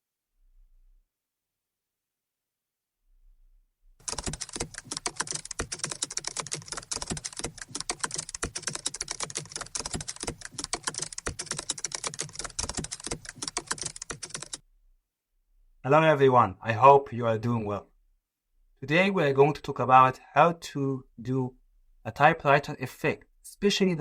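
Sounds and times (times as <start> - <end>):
rapid keyboard typing: 4.0 - 14.6.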